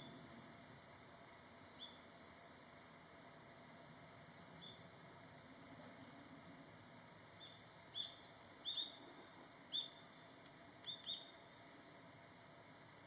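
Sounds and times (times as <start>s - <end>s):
finches giving high whistled calls: 4.6s - 4.9s, 7.4s - 9.1s, 9.7s - 10.1s, 10.8s - 11.4s.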